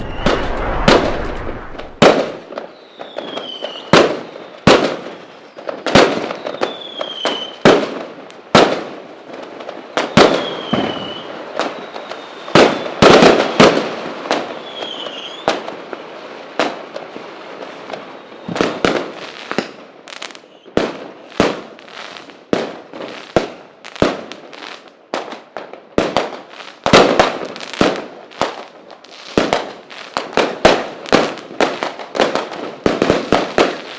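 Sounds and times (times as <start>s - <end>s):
fireworks whistles: 0.0s - 7.6s, 10.0s - 15.7s, 17.9s - 22.2s
fireworks bangs: 0.0s - 33.9s
fireworks crackle: 0.0s - 33.9s.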